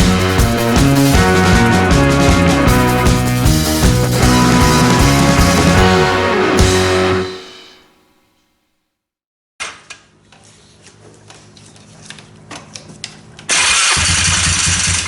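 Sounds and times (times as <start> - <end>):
engine starting and running: 13.5 - 15.0.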